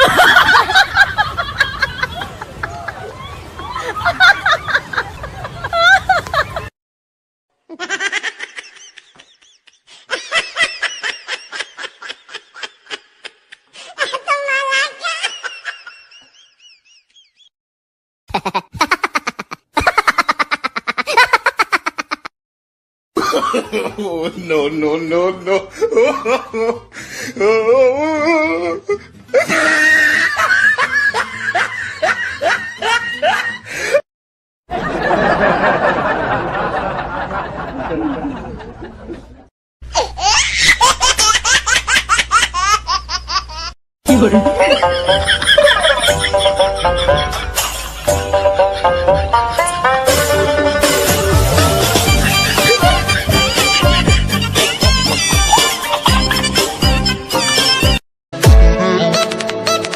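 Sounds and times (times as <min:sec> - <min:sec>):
comic squeaky laugh effect: 0:18.3 - 0:22.3, 0:27.8 - 0:32.2, 0:39.9 - 0:41.6, 0:42.6 - 0:47.7, 0:51.6 - 0:57.9
high-pitched giggles: 0:18.3 - 0:22.3.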